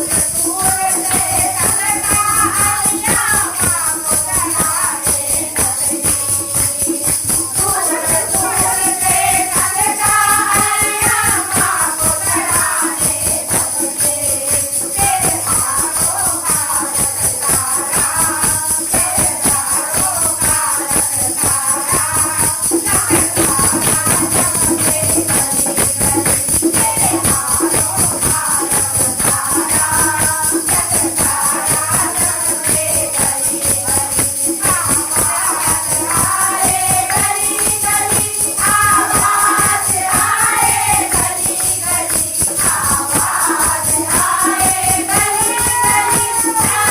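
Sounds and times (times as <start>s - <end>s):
drum beat: 0.0s - 46.9s
jingling hand percussion: 0.0s - 46.9s.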